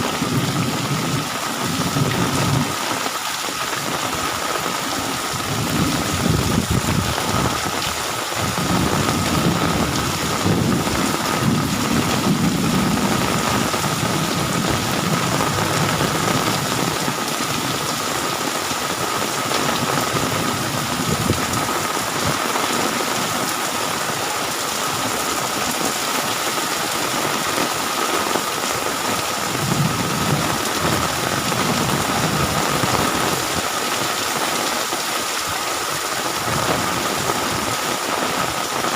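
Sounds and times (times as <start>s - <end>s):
heavy rain pouring: 0.0s - 38.9s
low rumbles of thunder: 5.4s - 7.6s, 8.5s - 17.7s, 29.4s - 33.6s.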